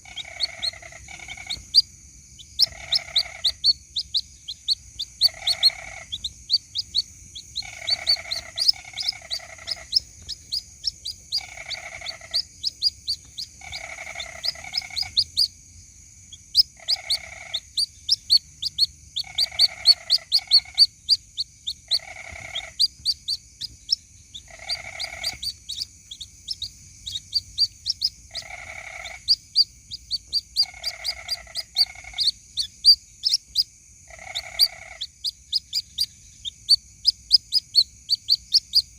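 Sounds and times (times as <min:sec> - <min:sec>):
chicks peeping: 0:00.0 - 0:15.6, 0:16.3 - 0:33.7, 0:34.3 - 0:38.9.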